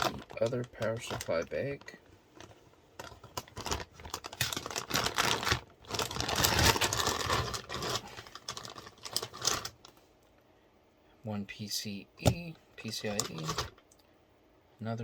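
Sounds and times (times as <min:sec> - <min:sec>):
plastic bag crinkling: 0:00.0 - 0:10.0, 0:12.3 - 0:13.8.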